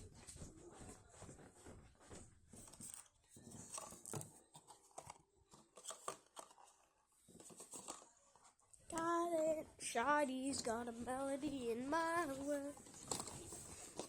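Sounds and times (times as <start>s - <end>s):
rustling: 2.5s - 9.4s, 10.0s - 14.0s
puzzle cube plastic clicks: 3.6s - 6.8s.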